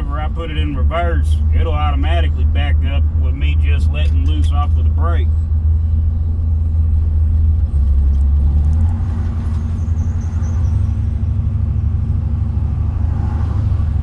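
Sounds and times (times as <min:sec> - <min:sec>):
pickup engine droning in cab: 0:00.0 - 0:14.0.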